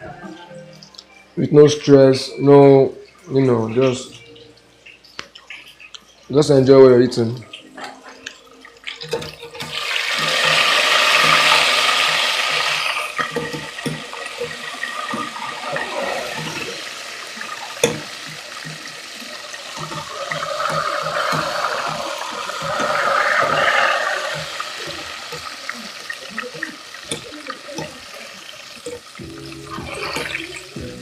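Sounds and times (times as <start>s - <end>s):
oil popping: 8.1s - 31.0s
food sizzling in hot oil: 8.4s - 31.0s.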